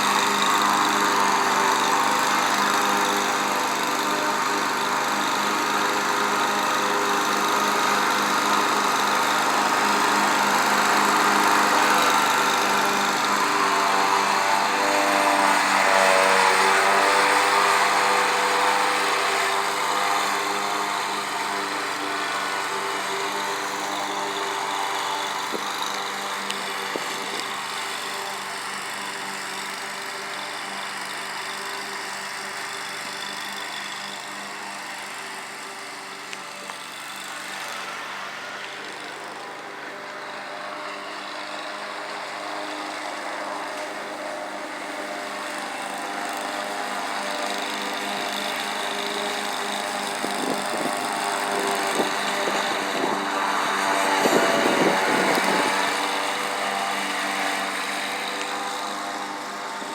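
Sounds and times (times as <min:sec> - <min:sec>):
riding mower engine hum: 0:00.0 - 0:59.9
cutting deck rushing: 0:45.7 - 0:59.9.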